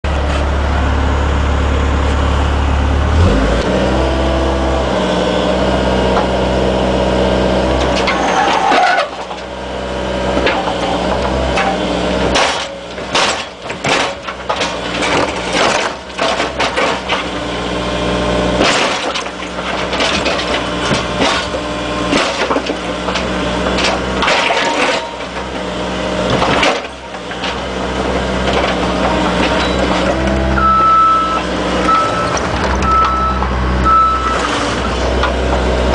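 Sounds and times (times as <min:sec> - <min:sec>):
excavator engine running: 0:00.0 - 0:35.9
sharp metal knocks and clanks: 0:10.3 - 0:17.4, 0:18.6 - 0:33.5.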